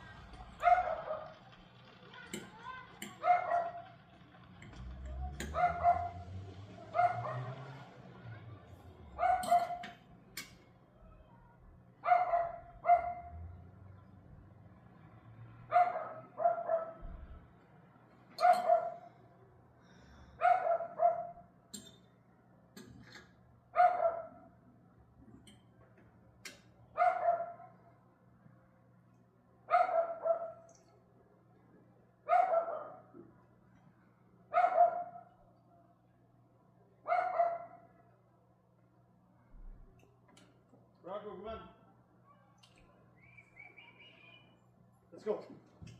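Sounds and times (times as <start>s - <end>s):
dog barking: 0.6s - 1.4s, 3.1s - 4.0s, 5.4s - 7.7s, 9.2s - 9.8s, 12.0s - 13.4s, 15.7s - 17.2s, 18.4s - 19.2s, 20.4s - 21.5s, 23.7s - 24.6s, 27.0s - 27.9s, 29.7s - 30.7s, 32.2s - 33.2s, 34.5s - 35.4s, 37.0s - 38.0s.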